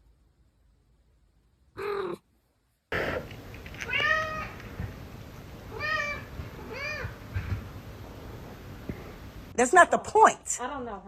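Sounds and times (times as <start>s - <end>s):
steady background hiss: 0.0s - 11.0s
cat meowing: 3.8s - 4.7s, 5.7s - 7.3s.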